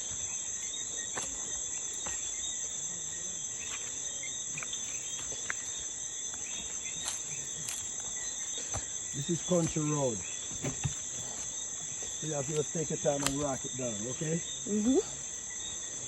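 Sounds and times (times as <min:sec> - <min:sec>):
crickets and insects trilling: 0:00.0 - 0:16.0
faint clicks: 0:12.5 - 0:13.5.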